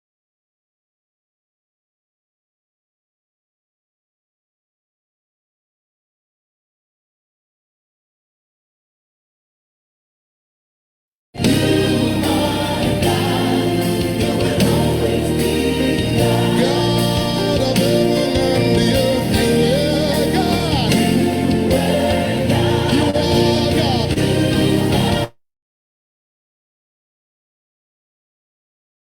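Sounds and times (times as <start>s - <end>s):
instrumental backing: 11.4s - 25.3s
gospel singing voices: 11.4s - 25.4s.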